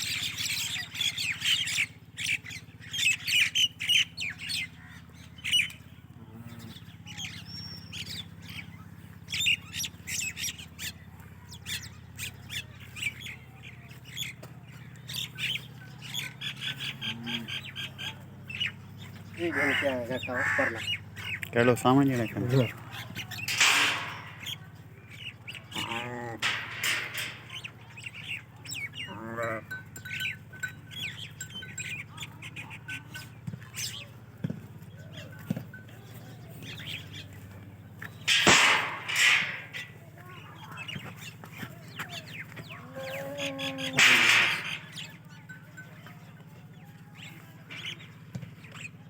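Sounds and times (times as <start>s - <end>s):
steady low hum: 0.0s - 48.8s
small birds chirping: 0.0s - 49.0s
goats bleating: 19.4s - 21.0s, 25.7s - 27.5s, 29.0s - 29.9s.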